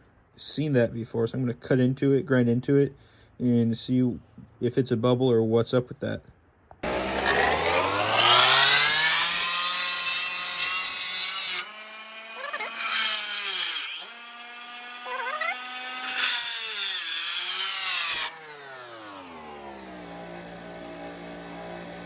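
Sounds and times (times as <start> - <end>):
disc grinder cutting steel: 6.8 - 22.0.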